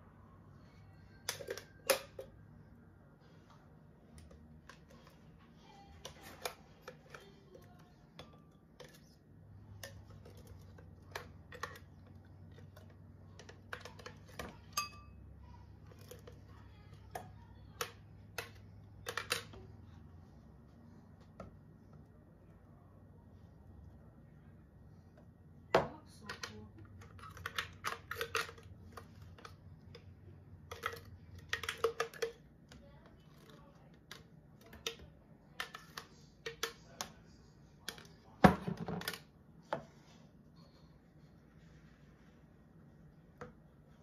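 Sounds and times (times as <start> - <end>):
faint low hum: 0.0 - 44.0
utensils and glassware tapping: 13.7 - 15.2.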